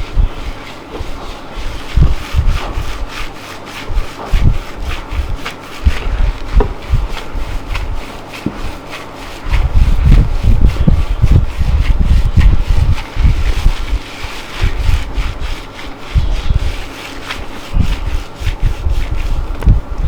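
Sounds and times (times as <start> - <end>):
soft low thumps: 0.0 - 3.1, 3.9 - 8.8, 9.4 - 14.0, 17.7 - 20.0
hands rubbing skin and cloth: 0.0 - 20.0.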